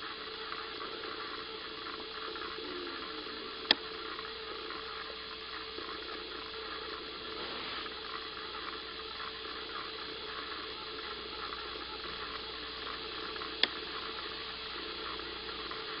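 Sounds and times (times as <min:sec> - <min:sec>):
faint hum: 0:00.0 - 0:16.0.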